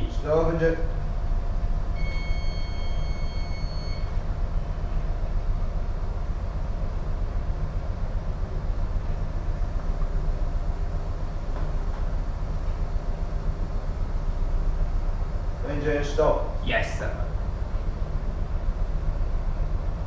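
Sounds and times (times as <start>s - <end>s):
low rumble of ship machinery: 0.0s - 20.0s
high electronic beep: 2.0s - 4.1s.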